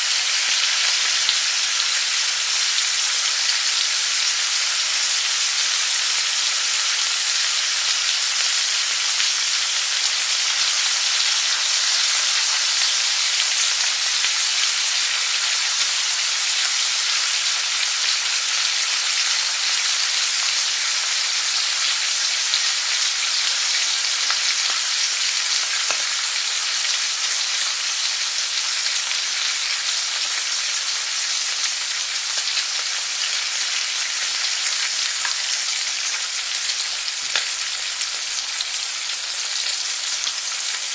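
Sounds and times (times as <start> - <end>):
food sizzling in a pan: 0.0 - 40.9.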